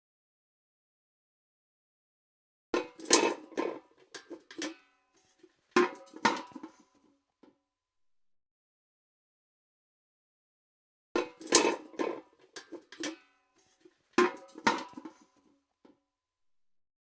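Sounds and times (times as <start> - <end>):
metal bucket clanking: 2.8 - 6.9, 11.2 - 15.3.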